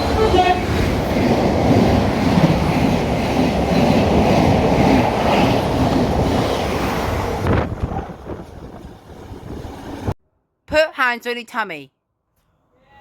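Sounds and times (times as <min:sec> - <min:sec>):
train wheels rumbling on rails: 0:00.0 - 0:10.2.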